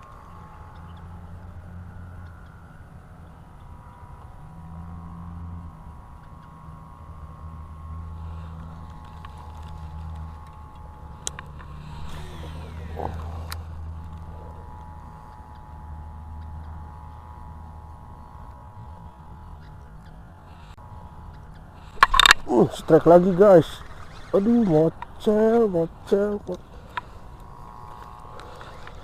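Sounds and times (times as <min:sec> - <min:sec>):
low engine hum: 0:00.0 - 0:29.0
sharp clicks: 0:21.3 - 0:22.6.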